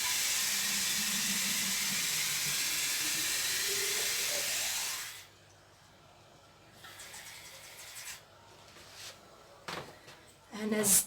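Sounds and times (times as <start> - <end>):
water pouring into a vessel: 0.0 - 5.3.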